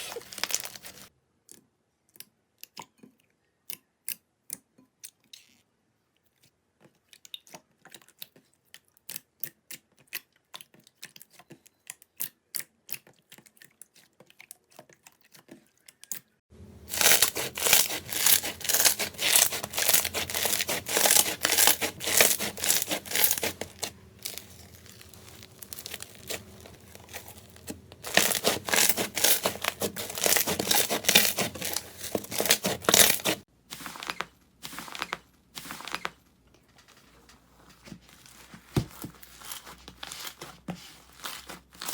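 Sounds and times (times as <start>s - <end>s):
slime crackling and popping: 16.9s - 33.4s.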